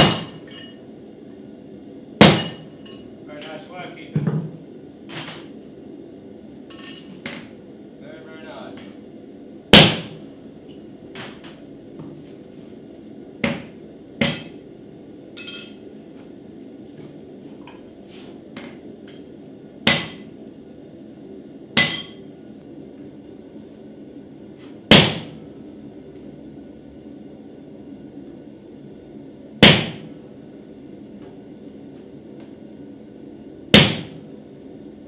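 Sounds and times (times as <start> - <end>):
hammer striking steel on anvil: 0.0 - 0.8, 2.2 - 3.0, 9.8 - 10.2, 13.4 - 14.6, 15.4 - 15.9, 19.9 - 20.3, 21.8 - 22.3, 24.9 - 25.4, 29.6 - 30.1, 33.8 - 34.2.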